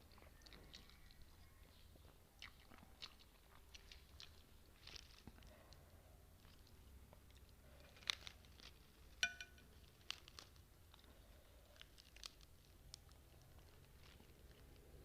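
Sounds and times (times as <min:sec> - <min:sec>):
crisp eating crunches: 0:00.0 - 0:15.0
utensil clinking on dish: 0:09.2 - 0:09.7.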